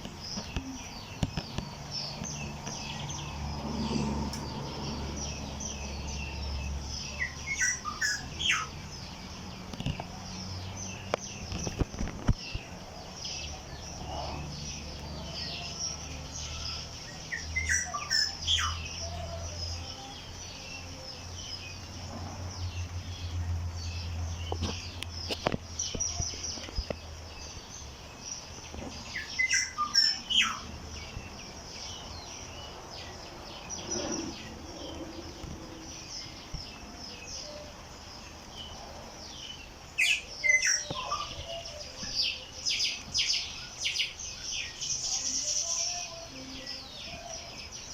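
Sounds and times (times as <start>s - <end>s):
birds chirping and singing: 0.0s - 47.9s.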